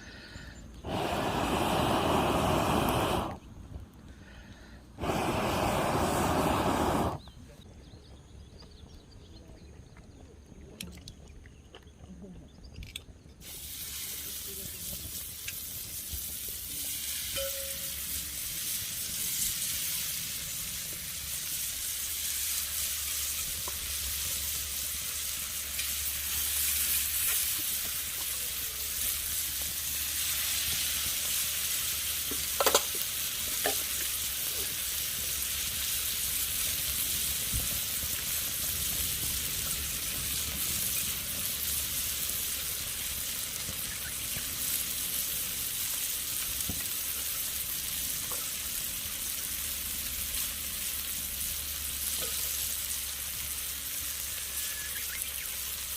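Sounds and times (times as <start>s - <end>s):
meat sizzling on a griddle: 13.4s - 55.9s.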